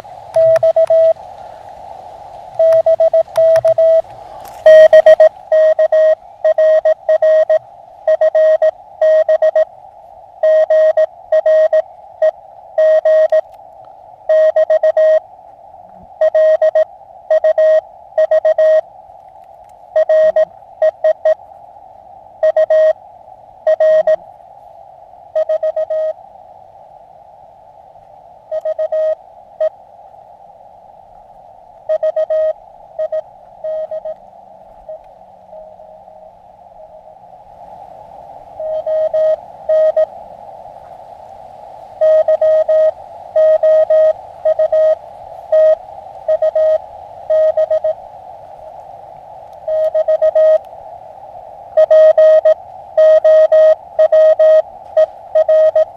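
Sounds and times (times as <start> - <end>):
receiver hiss: 0.0 - 55.9
morse code tone: 0.4 - 1.2, 2.6 - 4.0, 4.6 - 9.7, 10.4 - 13.5, 14.3 - 15.2, 16.2 - 18.8, 20.0 - 21.4, 22.4 - 23.0, 23.7 - 24.2, 25.4 - 26.2, 28.5 - 29.7, 31.9 - 34.2, 38.6 - 40.1, 42.0 - 48.0, 49.7 - 50.6, 51.8 - 55.9.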